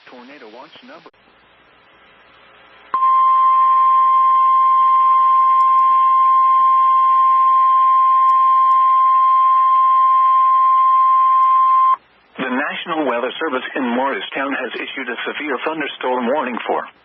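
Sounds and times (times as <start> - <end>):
steady single-pitch alarm tone: 3.0 - 12.0.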